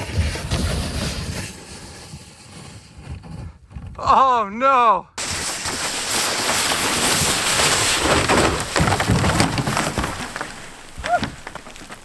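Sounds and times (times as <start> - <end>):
kayak scraping over gravel: 5.2 - 12.0.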